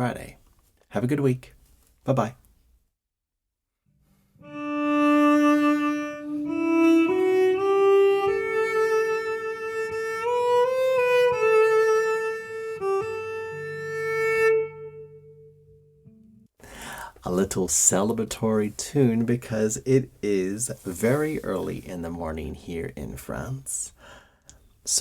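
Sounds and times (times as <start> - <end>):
cello playing slow tune: 4.1 - 16.3.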